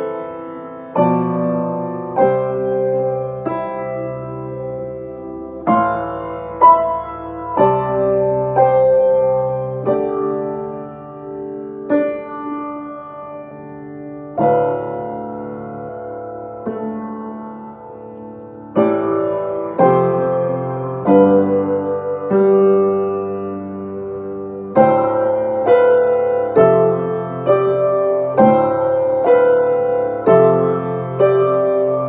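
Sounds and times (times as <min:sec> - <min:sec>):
piano chords ringing: 0:00.0 - 0:32.0.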